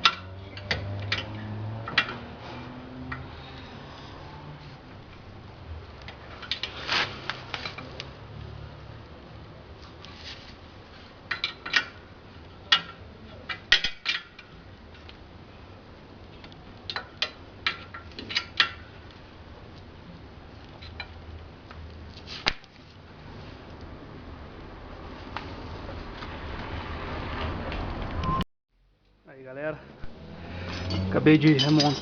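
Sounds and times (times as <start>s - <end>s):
metal tools clinking: 30.6s - 32.0s.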